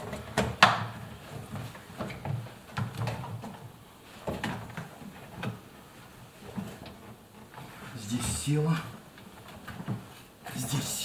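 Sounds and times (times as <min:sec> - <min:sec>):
rubber seal knocking and rubbing: 0:00.0 - 0:05.6.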